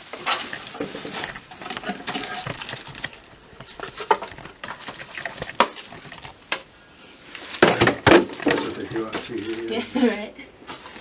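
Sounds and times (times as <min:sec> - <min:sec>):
packaging crinkling: 0:00.2 - 0:06.7.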